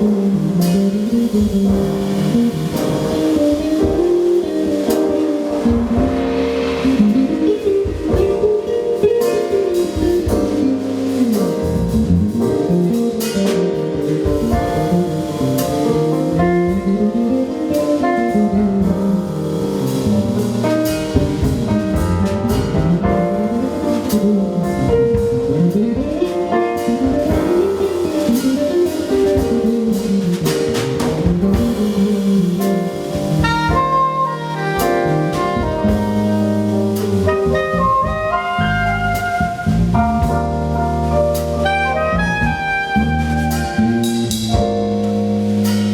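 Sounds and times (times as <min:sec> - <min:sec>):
drum kit: 0:00.0 - 0:45.9
soprano saxophone: 0:33.3 - 0:40.6, 0:41.6 - 0:44.8.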